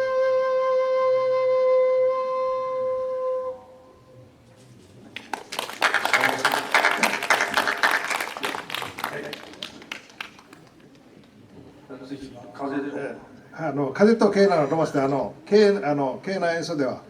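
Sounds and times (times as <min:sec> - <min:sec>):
flute holding long note: 0:00.0 - 0:04.4
audience applause: 0:05.1 - 0:10.9.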